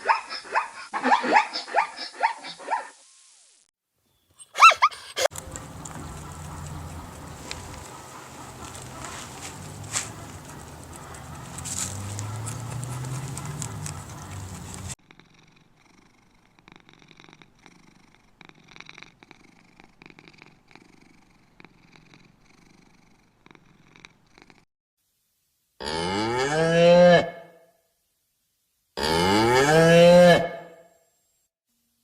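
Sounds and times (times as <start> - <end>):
cow mooing: 25.8 - 27.5, 29.0 - 30.8.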